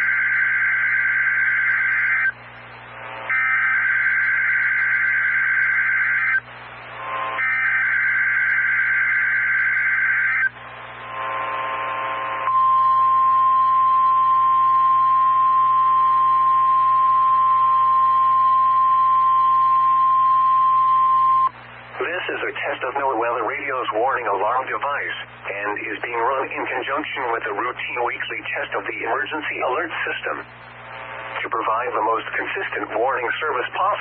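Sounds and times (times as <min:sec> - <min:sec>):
steady warning alarm tone: 0:00.0 - 0:02.4, 0:03.1 - 0:21.6
radio hiss: 0:01.2 - 0:09.5, 0:10.1 - 0:14.2, 0:19.6 - 0:34.0.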